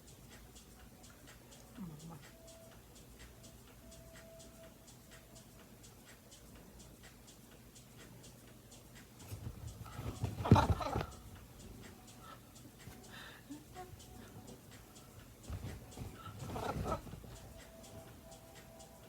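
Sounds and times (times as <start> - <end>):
rustling: 9.2 - 12.0, 14.6 - 18.7.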